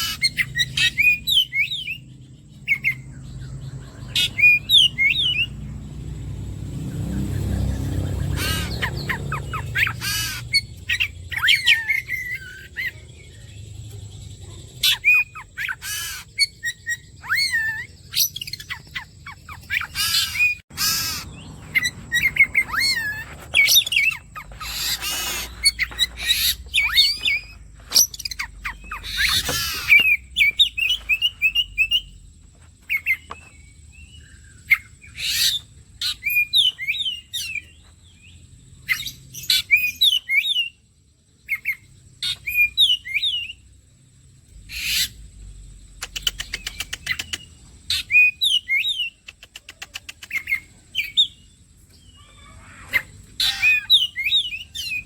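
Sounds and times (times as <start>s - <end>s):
harsh rasping bird calls: 0.0s - 40.8s, 44.6s - 55.0s
bird rattle call: 19.9s - 30.5s.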